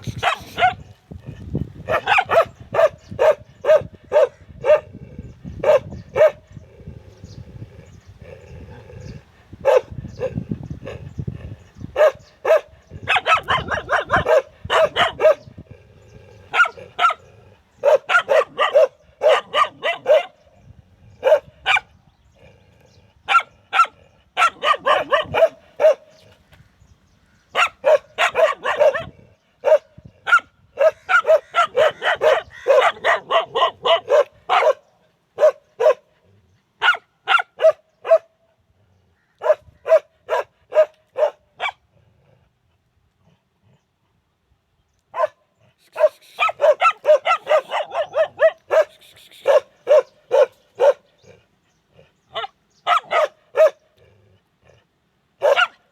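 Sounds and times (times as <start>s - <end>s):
dogs barking: 0.1s - 0.9s, 1.8s - 5.0s, 5.6s - 6.6s, 9.0s - 11.1s, 11.9s - 15.7s, 16.5s - 20.6s, 21.2s - 21.9s, 23.2s - 26.2s, 27.5s - 36.2s, 36.8s - 38.5s, 39.4s - 41.9s, 45.1s - 54.8s, 55.4s - 55.9s.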